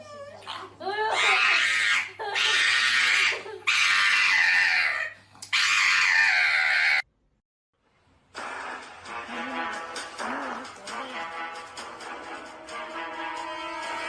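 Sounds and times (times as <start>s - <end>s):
dog screaming: 0.4s - 7.1s.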